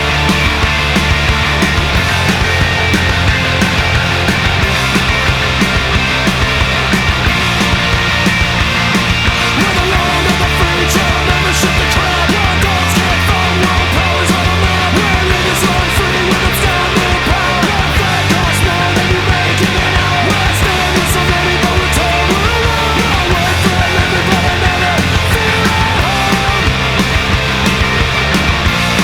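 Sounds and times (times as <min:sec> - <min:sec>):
punk rock music: 0:00.0 - 0:29.0.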